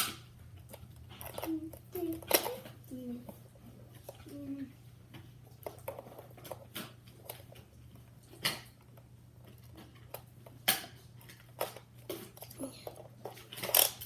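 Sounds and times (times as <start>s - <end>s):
plastic toy parts clicking: 11.5s - 14.0s.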